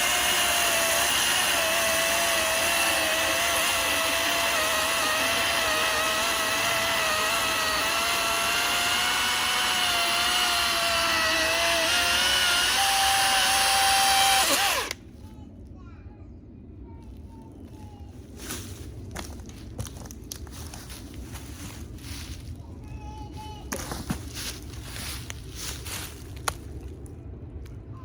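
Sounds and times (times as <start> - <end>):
electric chainsaw cutting log: 0.0 - 15.0.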